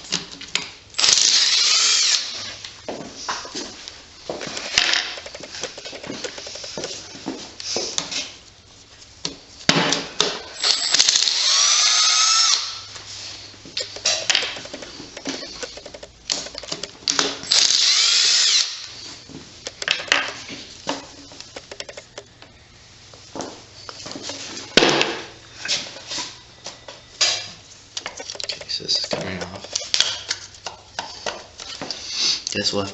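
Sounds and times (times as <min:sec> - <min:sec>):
power drill whirring: 0:01.0 - 0:02.6, 0:10.6 - 0:12.8, 0:17.5 - 0:18.9.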